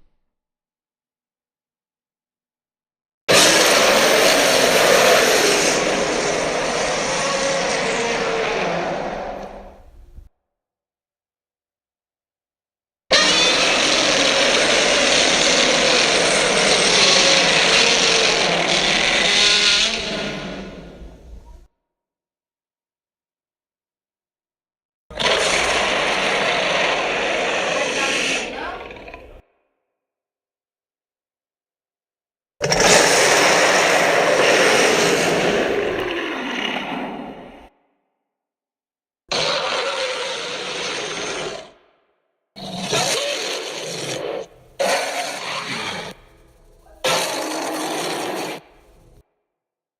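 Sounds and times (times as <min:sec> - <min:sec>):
harsh creature roar: 0:03.3 - 0:10.0, 0:13.1 - 0:21.4, 0:25.1 - 0:29.4, 0:32.6 - 0:37.7, 0:39.3 - 0:41.8, 0:42.6 - 0:49.2.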